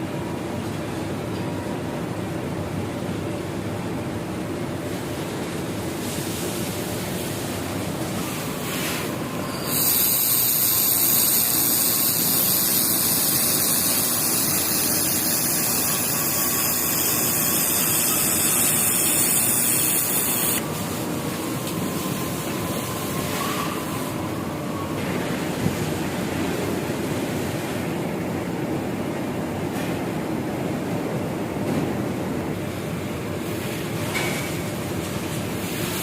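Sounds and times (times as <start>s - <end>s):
machine running noise: 3.7s - 28.4s
laser welder hissing: 9.0s - 20.6s.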